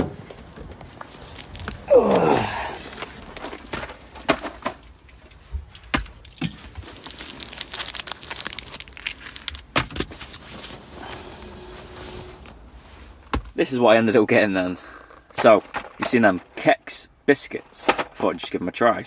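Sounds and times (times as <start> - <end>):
handling clicks and knocks: 5.7 - 6.9.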